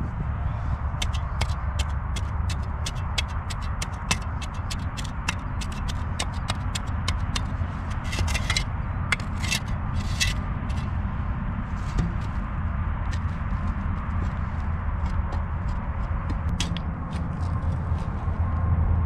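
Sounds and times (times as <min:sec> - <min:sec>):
steady low rumble: 0:00.0 - 0:19.0.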